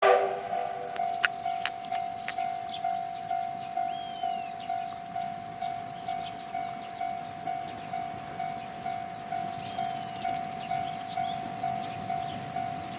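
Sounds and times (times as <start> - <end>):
level crossing warning bell ringing: 0.0 - 12.9.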